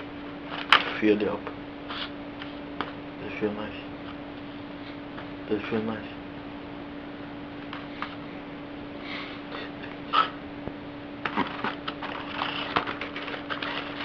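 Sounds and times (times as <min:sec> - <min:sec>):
steady low hum: 0:00.0 - 0:14.0
plastic packaging rustling: 0:11.3 - 0:14.0
small clicks and crackles: 0:11.3 - 0:14.0.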